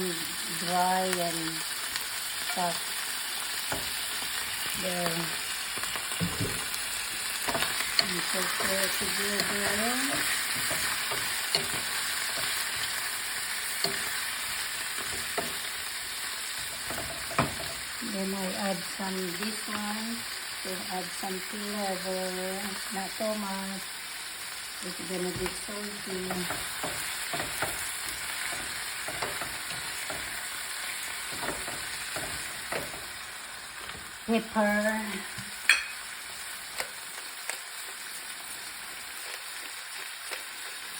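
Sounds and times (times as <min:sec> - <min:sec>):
chicken wings sizzling in a pan: 0:00.0 - 0:40.9.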